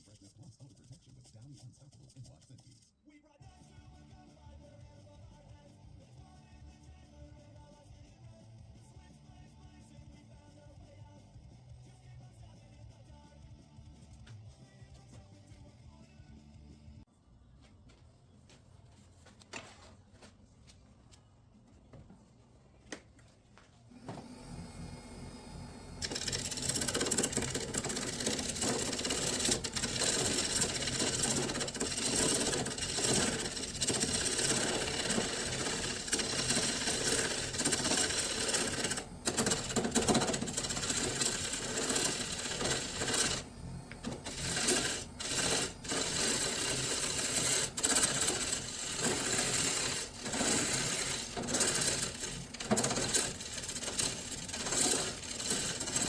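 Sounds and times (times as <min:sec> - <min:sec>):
lathe tool clattering on spinning wood: 0:26.0 - 0:56.0.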